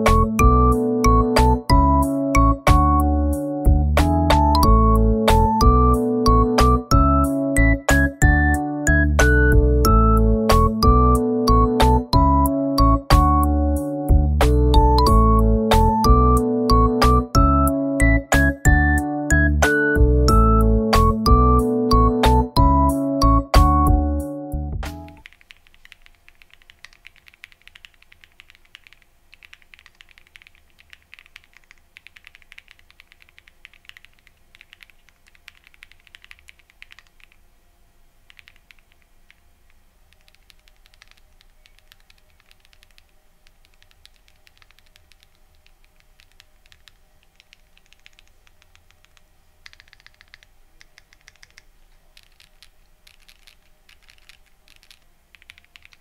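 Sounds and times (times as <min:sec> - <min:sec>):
mechanical keyboard typing: 0:24.9 - 0:37.4, 0:38.2 - 0:56.0.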